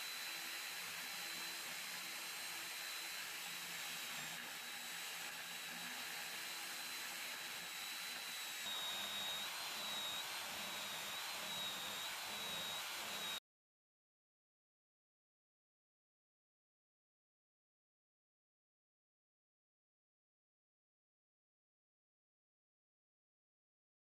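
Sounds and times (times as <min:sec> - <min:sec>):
electric drill whirring: 0:00.0 - 0:13.4.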